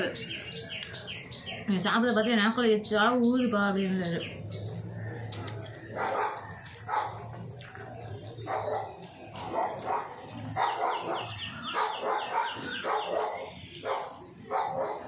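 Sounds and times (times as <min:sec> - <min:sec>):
dog barking: 0:05.9 - 0:07.3, 0:08.4 - 0:15.0.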